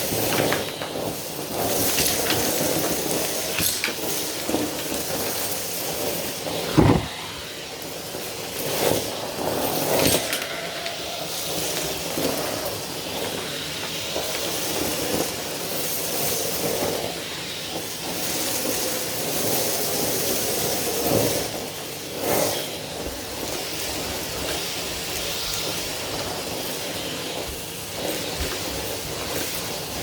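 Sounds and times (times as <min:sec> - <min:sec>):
vacuum cleaner running: 0:00.0 - 0:15.5
sharp knock: 0:06.7 - 0:07.3.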